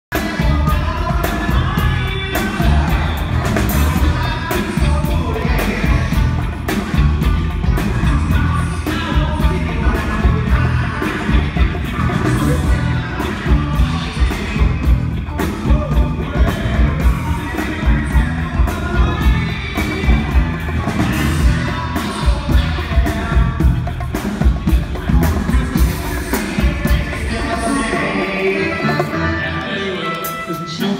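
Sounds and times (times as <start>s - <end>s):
live band playing: 0.1s - 30.9s
person singing: 0.1s - 30.9s
steady drum beat: 0.1s - 30.9s.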